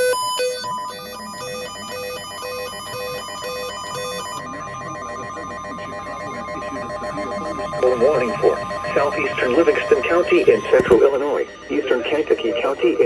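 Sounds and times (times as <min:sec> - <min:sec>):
rapid electronic beeps: 0:00.0 - 0:13.0
steady high tone: 0:04.4 - 0:13.0.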